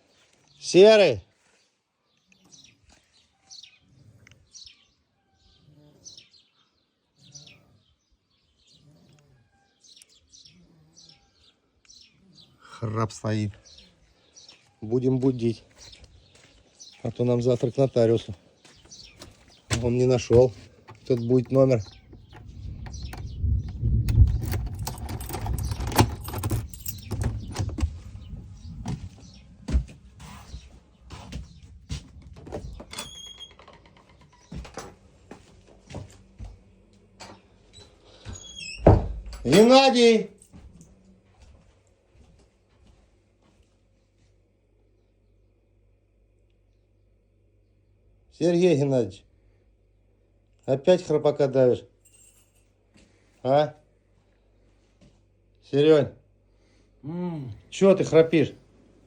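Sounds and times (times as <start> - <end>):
keys jingling: 19.8 - 28.7, 39.4 - 39.8, 52.0 - 52.8
low rumble: 21.9 - 33.0.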